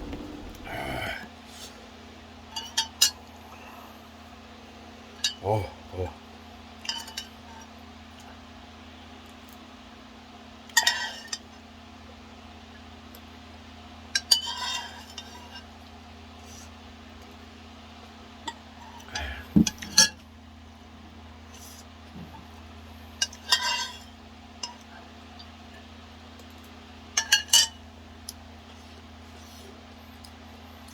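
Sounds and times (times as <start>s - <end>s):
steady low hum: 0.0s - 1.3s.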